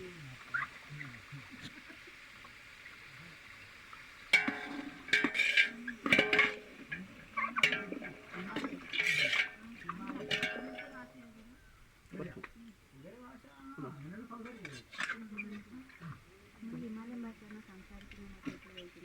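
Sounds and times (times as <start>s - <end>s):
metal ladle clanking in pot: 4.3s - 11.5s.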